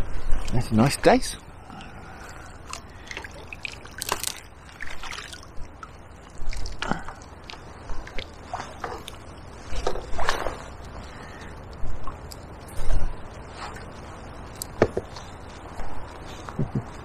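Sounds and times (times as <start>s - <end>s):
river trickling: 0.0s - 15.5s
fish splashing in water: 2.4s - 11.2s.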